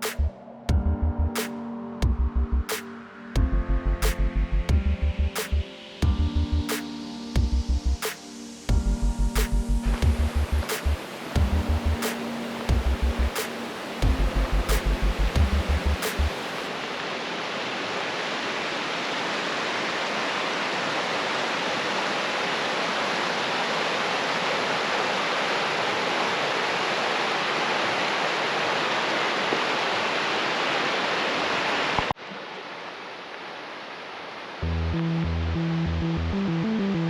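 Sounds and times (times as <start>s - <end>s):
music: 0.0s - 16.6s, 34.6s - 37.0s
rush of flowing water: 9.8s - 34.6s.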